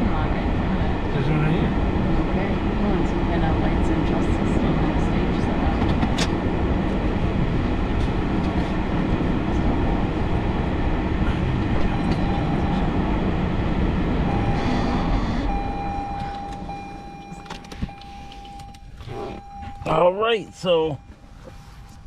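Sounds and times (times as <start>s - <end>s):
car engine and tyres rumbling: 0.0s - 22.0s
steady electronic tone: 11.9s - 22.0s.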